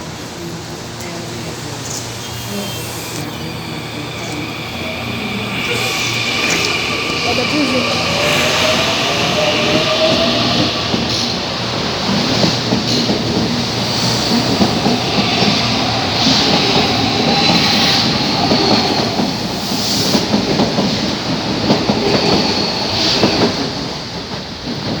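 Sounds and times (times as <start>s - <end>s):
thin high whine: 1.0s - 10.4s.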